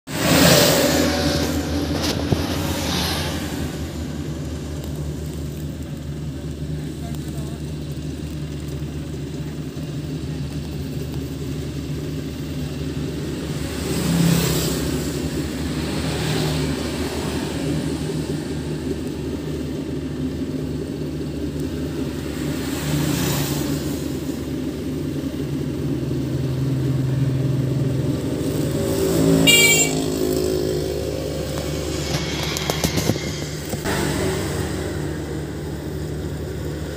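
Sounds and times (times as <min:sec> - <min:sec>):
harvesting machine engine droning: 0:23.9 - 0:36.9.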